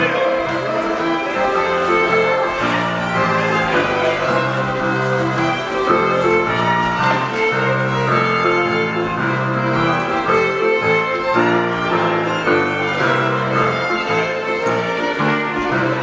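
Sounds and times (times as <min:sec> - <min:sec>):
fiddle playing jig melody: 0:00.0 - 0:16.0
piano accompaniment: 0:00.0 - 0:16.0.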